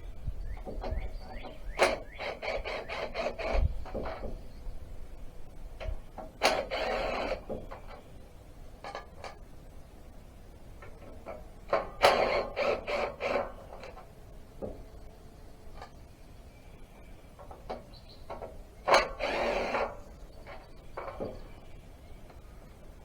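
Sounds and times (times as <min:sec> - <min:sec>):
tools scraping and clattering on metal: 0:00.6 - 0:04.5, 0:05.8 - 0:08.1, 0:08.8 - 0:09.4, 0:10.8 - 0:14.9, 0:17.3 - 0:21.7.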